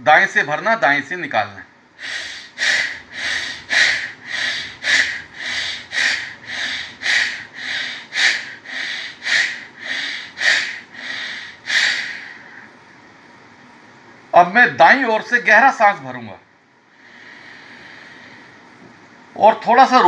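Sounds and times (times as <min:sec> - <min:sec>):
man breathing hard through nose: 0:02.0 - 0:12.8, 0:16.9 - 0:18.6.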